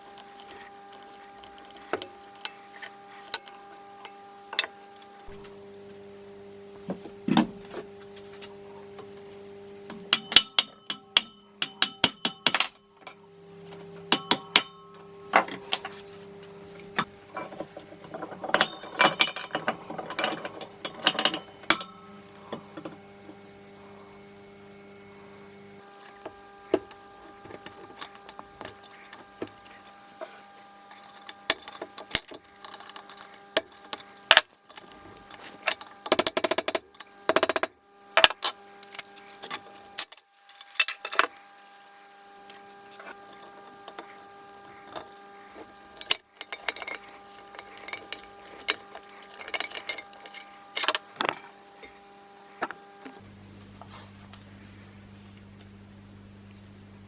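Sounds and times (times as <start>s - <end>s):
metal parts and tools clinking: 0.0s - 5.4s, 10.1s - 13.2s, 14.1s - 16.0s, 17.0s - 22.9s, 25.8s - 42.0s, 42.9s - 52.0s.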